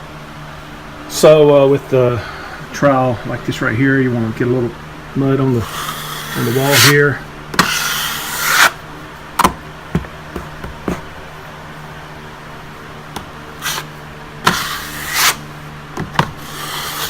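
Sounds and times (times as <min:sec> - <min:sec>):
steady low hum: 0:00.0 - 0:17.0
trowel scraping compound on wall: 0:05.6 - 0:07.0, 0:07.6 - 0:08.8, 0:13.6 - 0:15.5, 0:16.2 - 0:17.0.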